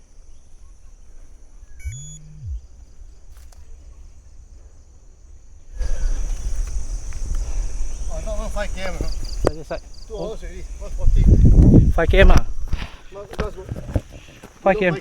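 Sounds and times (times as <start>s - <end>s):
insects buzzing: 0.0s - 15.0s
short low hum: 1.7s - 4.8s
low microphone rumble: 1.7s - 6.0s.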